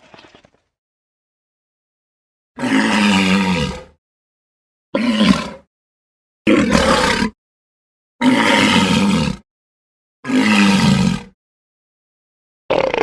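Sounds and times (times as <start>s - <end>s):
dinosaur growling roars: 2.6s - 4.0s, 6.5s - 7.4s, 8.2s - 9.4s, 12.7s - 13.0s.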